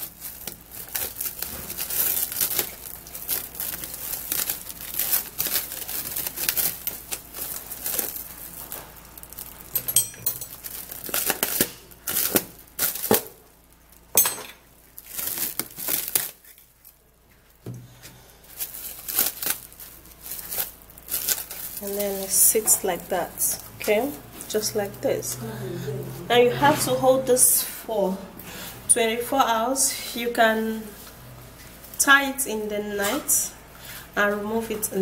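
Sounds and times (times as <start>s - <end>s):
cling film crinkling: 0.0s - 9.8s, 10.4s - 17.6s, 18.2s - 25.1s.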